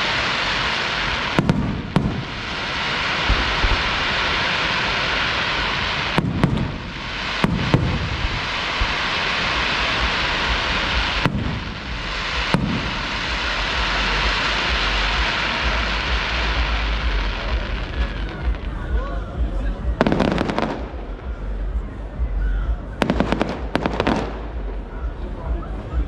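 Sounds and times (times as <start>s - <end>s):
firework crackling hiss: 0.0s - 26.0s
firework shells bursting: 1.0s - 15.0s.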